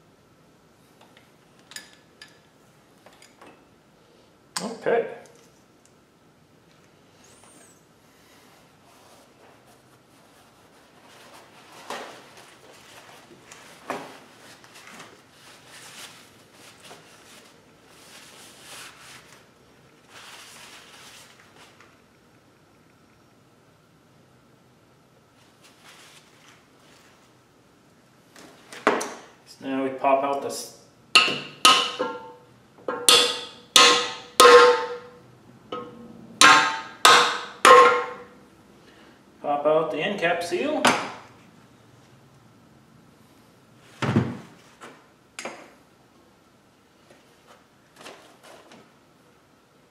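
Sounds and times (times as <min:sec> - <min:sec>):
sharp knocks: 0:31.2 - 0:35.1, 0:35.8 - 0:38.2
hammer striking metal: 0:31.2 - 0:38.3
tools and parts shuffling and scraping: 0:47.1 - 0:48.9.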